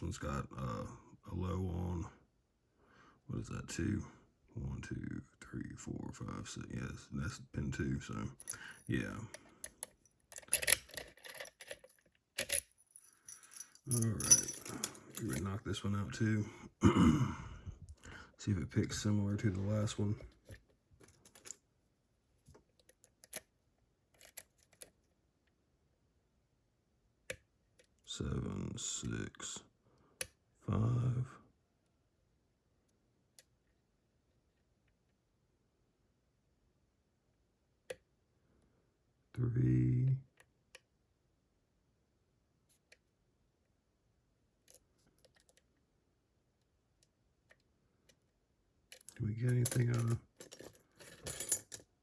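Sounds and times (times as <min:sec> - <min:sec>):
lock picking metallic clicks: 0:09.6 - 0:12.8.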